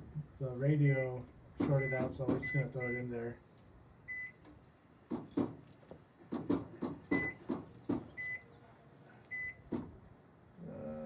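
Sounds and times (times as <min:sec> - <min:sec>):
knocks and clunks: 0:01.6 - 0:02.7, 0:06.3 - 0:08.2, 0:09.6 - 0:10.0
microwave keypad beeping: 0:01.7 - 0:03.2, 0:04.1 - 0:04.4, 0:07.1 - 0:07.4, 0:08.2 - 0:08.5, 0:09.3 - 0:09.6.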